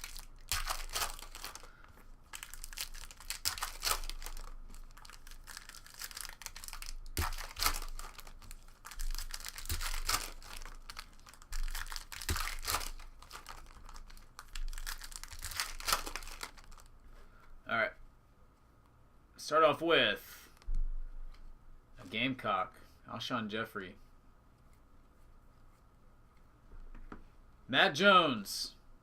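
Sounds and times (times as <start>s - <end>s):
wrappers tearing and crinkling: 0.0s - 16.9s.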